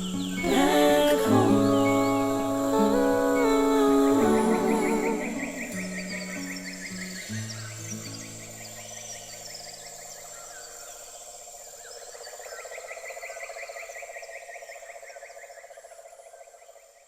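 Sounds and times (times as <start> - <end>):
frog trilling: 0.0 - 7.2
high insect buzz: 0.0 - 11.0
birds chirping: 0.0 - 12.5.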